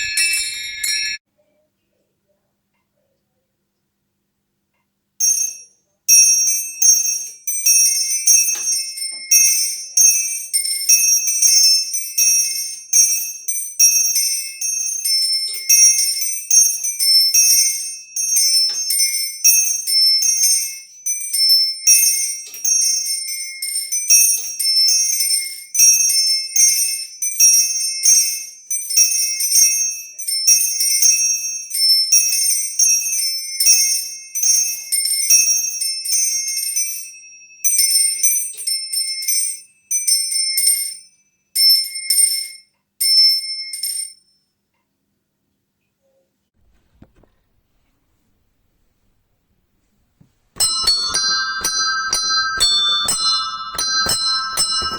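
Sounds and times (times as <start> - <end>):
small bells pealing rapidly: 0.0 - 1.2, 50.6 - 54.9.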